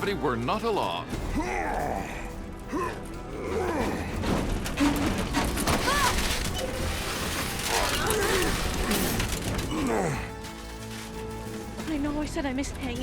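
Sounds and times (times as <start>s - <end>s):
crashing and rumbling effects: 4.0s - 9.8s.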